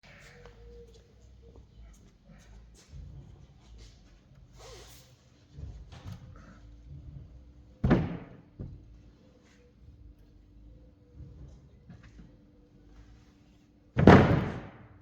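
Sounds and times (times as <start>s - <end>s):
quiet knocks and handling noises: 0.0s - 13.8s
loud thump: 14.0s - 14.8s.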